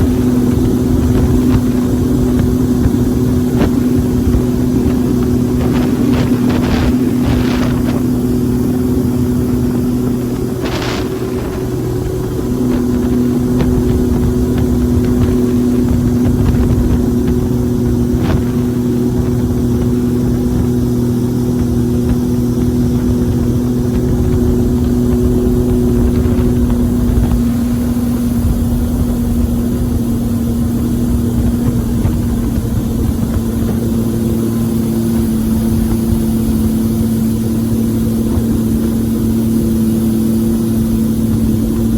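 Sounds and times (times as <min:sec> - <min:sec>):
boat engine running: 0:00.0 - 0:41.9.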